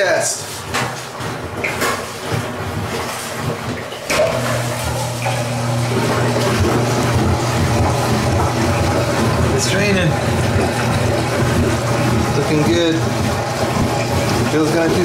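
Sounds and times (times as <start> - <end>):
drain pump humming: 0.0 - 15.0
rushing water: 0.0 - 15.0
drain pump click: 3.6 - 15.0.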